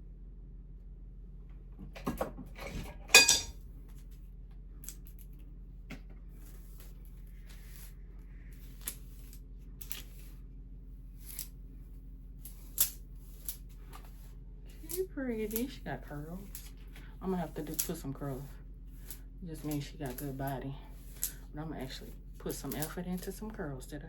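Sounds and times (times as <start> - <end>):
small hard objects clinking: 3.1 - 3.5, 17.5 - 20.4.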